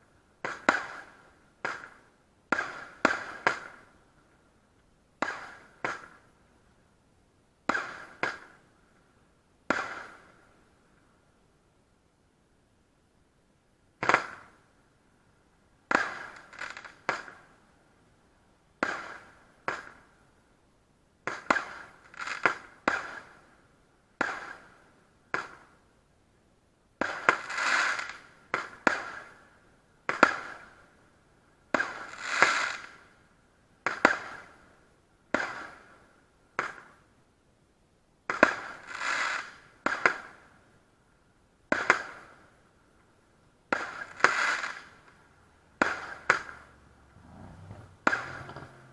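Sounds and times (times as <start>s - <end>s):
fireworks bangs: 9.7s - 10.4s, 18.8s - 20.2s, 21.2s - 23.5s, 24.2s - 25.8s, 27.0s - 29.4s, 31.7s - 33.0s, 38.3s - 40.5s, 43.6s - 48.9s.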